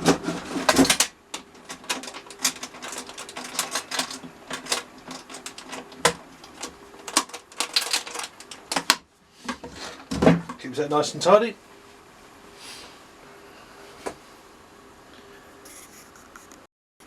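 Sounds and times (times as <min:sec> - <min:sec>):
wooden pieces and tools clicking: 0:00.0 - 0:10.1
faint steady hum: 0:00.0 - 0:16.7.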